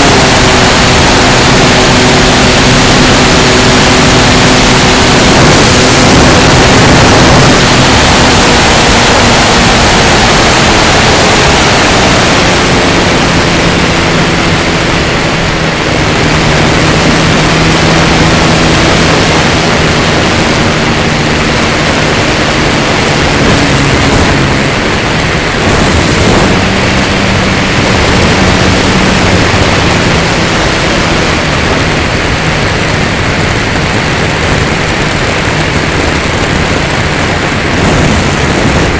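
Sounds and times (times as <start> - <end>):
electric motor and propeller hum: 0.0 - 38.9
wind rushing over camera: 0.0 - 38.9.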